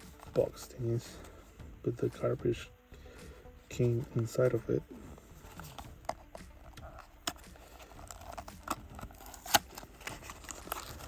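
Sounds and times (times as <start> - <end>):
packaging rustling: 5.3 - 11.0.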